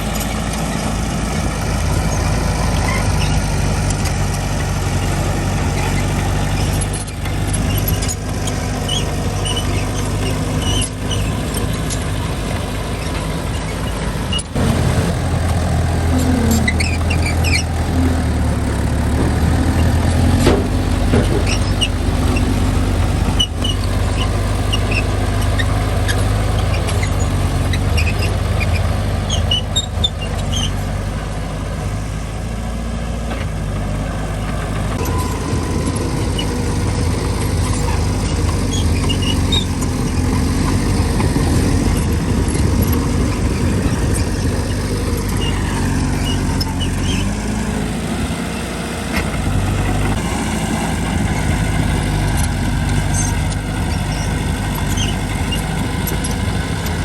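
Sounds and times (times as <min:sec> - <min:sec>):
short squeaks and clicks: 0:00.0 - 0:12.2, 0:13.0 - 0:14.6, 0:15.5 - 0:31.0, 0:34.4 - 0:47.8, 0:51.6 - 0:57.0
diesel bulldozer engine running: 0:00.0 - 0:57.0.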